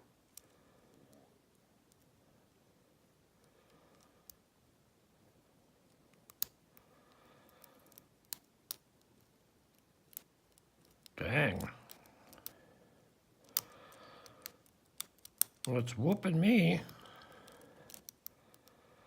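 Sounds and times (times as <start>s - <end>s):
lock pick clicking on pins: 5.9s - 6.8s, 7.4s - 12.6s, 13.4s - 15.7s, 16.8s - 18.8s.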